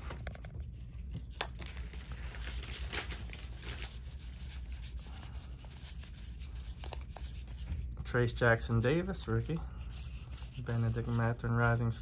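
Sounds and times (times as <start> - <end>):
low steady hum: 0.0 - 12.0
trading cards being flipped: 6.6 - 7.6.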